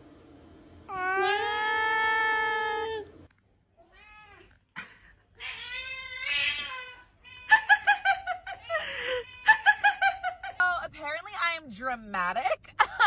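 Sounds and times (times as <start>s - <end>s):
cat yowling and meowing: 0.9s - 3.1s, 5.4s - 7.7s
short high-pitched cat cries: 5.4s - 7.7s.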